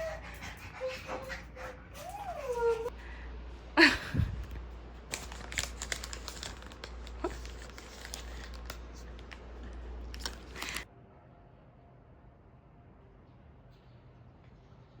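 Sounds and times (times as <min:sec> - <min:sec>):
crinkling and rustling: 0:04.3 - 0:10.9.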